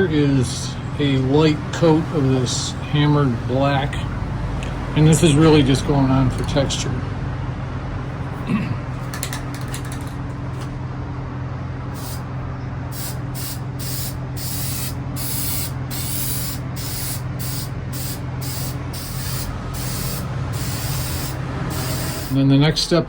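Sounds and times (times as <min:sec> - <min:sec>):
steady low hum: 0:00.0 - 0:23.0
spray can hissing bursts: 0:12.0 - 0:12.3, 0:12.9 - 0:22.4.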